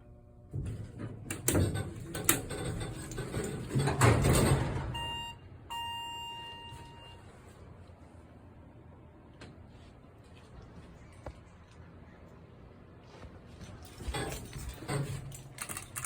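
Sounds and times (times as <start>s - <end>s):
elevator doors clunking and rattling: 0.5s - 5.4s, 13.9s - 16.0s.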